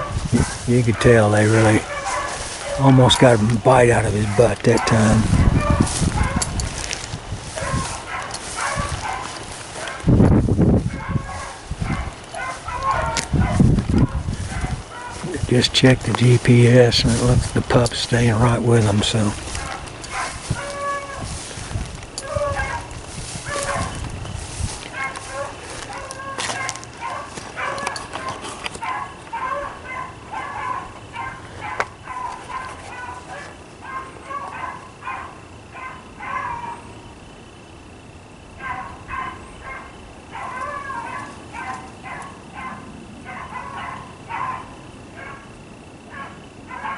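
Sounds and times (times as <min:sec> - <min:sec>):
beagles baying: 0:00.0 - 0:46.9.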